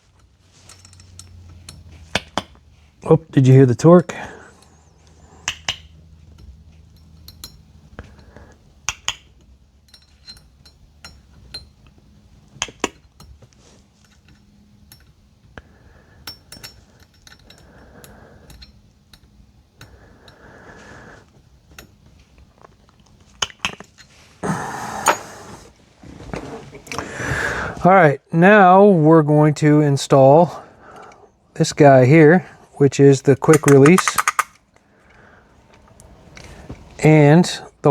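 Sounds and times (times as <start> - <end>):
rustling: 0.0 - 3.1
metal tools clinking: 0.0 - 8.6, 9.3 - 12.2, 16.1 - 19.4, 33.3 - 34.7.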